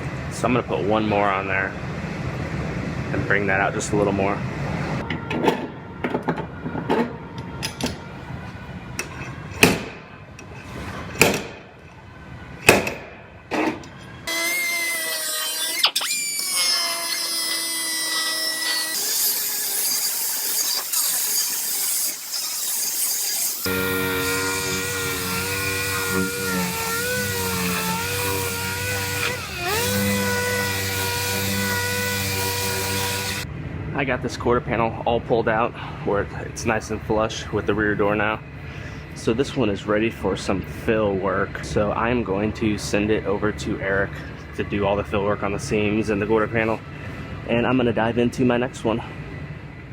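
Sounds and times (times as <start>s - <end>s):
grinder whining on sheet metal: 14.3s - 33.4s.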